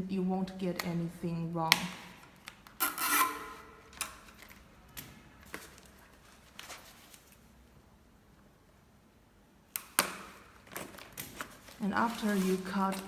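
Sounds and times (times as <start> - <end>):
packaging rustling: 5.3 - 7.6, 10.2 - 13.0.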